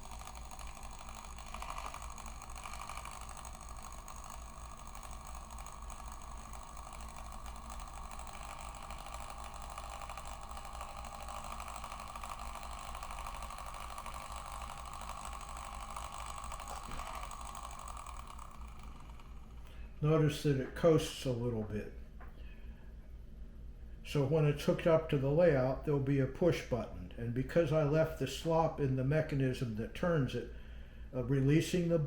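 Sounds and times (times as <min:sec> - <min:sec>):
small electric motor whining: 0:00.0 - 0:19.9.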